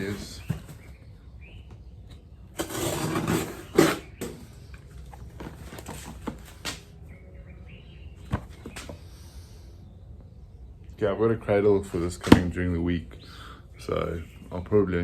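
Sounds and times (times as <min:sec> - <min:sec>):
rustling of handled item: 0:04.8 - 0:06.8.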